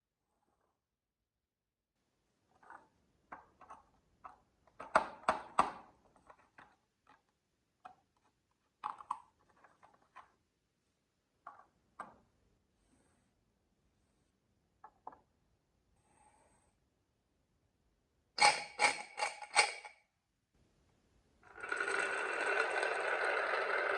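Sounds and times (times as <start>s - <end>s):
marbles clacking on wooden run: 21.5s - 23.9s.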